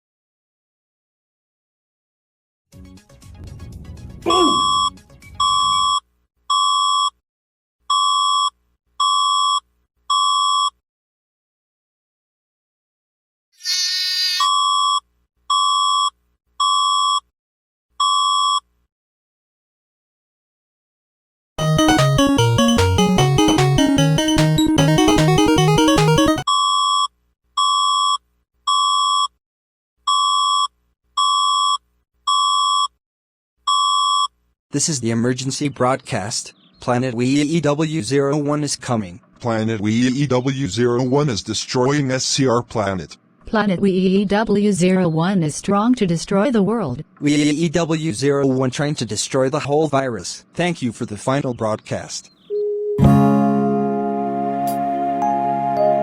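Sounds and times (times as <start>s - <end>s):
low rumble: 3.2s - 5.9s
harsh buzzy electronic alert beeps: 4.4s - 6.0s, 21.6s - 26.5s.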